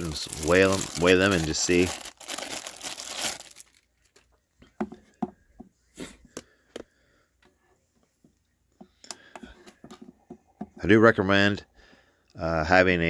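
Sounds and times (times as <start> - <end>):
plastic bag crinkle: 0.0 - 4.3.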